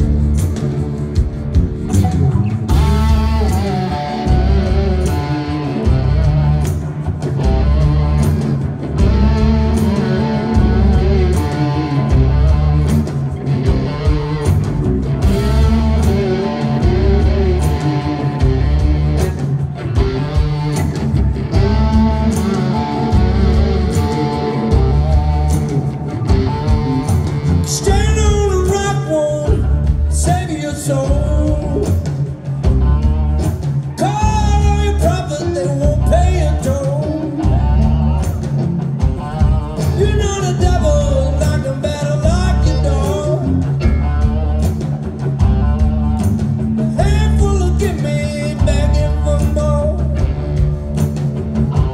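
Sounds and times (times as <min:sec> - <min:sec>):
bass: 0:00.0 - 0:51.9
electric guitar: 0:00.0 - 0:51.9
steady drum beat: 0:00.0 - 0:51.9
person singing: 0:21.4 - 0:25.5, 0:27.6 - 0:33.2, 0:33.9 - 0:38.5, 0:39.1 - 0:44.7, 0:46.8 - 0:50.4.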